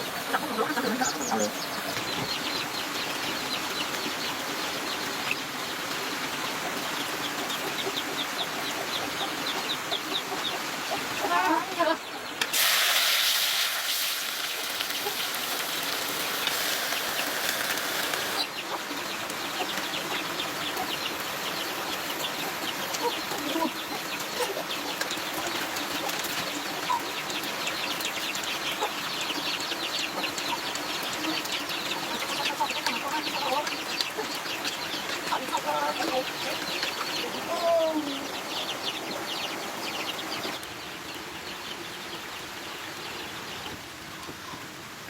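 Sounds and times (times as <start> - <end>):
chickens clucking: 0.0 - 12.5, 14.4 - 44.7
steady hiss: 12.4 - 18.4.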